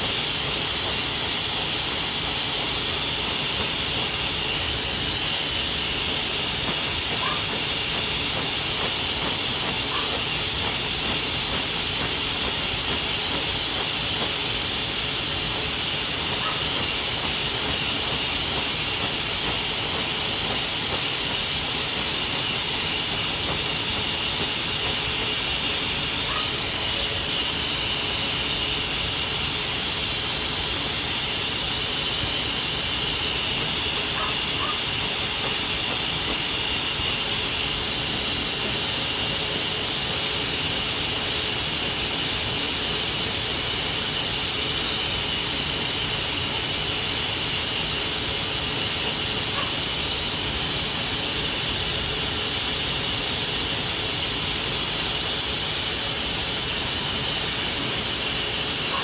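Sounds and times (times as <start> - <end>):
blow dryer blowing air: 0.0 - 59.0.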